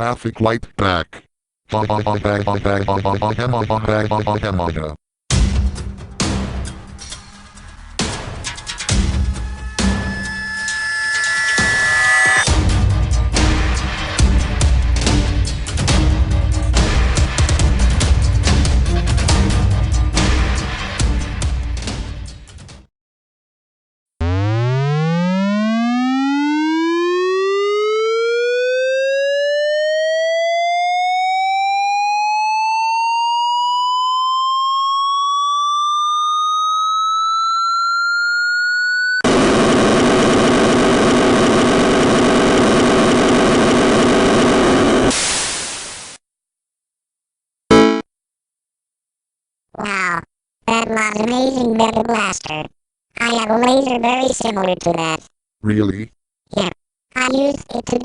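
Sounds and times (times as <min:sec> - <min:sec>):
synthesized tone rising in pitch: 0:08.8 - 0:12.5, 0:24.2 - 0:45.1
harsh noisy laser blast: 0:39.2 - 0:46.2.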